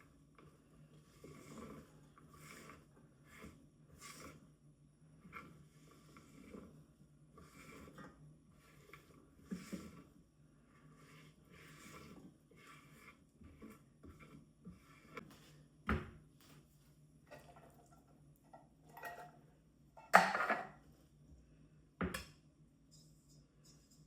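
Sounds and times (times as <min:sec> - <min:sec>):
dishes and cutlery clinking: 0:18.9 - 0:19.4, 0:20.0 - 0:20.8.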